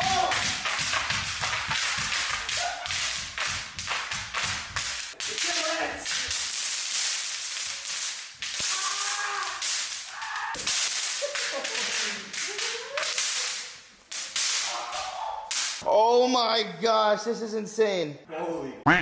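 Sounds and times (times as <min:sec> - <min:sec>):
wordless shouts: 0:00.0 - 0:00.6, 0:02.4 - 0:03.0, 0:08.6 - 0:10.8, 0:14.6 - 0:15.6
bang snaps crackling: 0:00.0 - 0:15.8.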